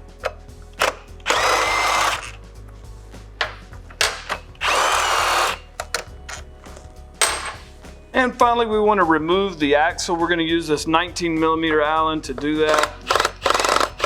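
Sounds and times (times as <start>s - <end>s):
tool handling clicks: 0.2s - 2.3s, 3.4s - 6.5s, 12.7s - 14.0s
cordless driver motor whine: 0.8s - 2.4s, 4.6s - 5.6s, 12.7s - 14.0s.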